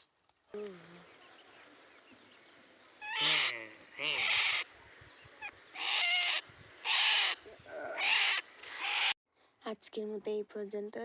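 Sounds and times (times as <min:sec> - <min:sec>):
waterhen harsh calls: 0:02.9 - 0:09.2.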